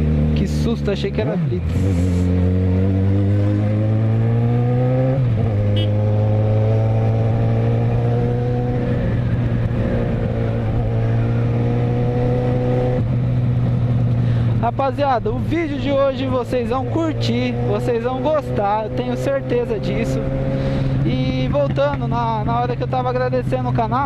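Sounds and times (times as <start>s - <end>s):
motorcycle engine accelerating: 0.0s - 24.0s.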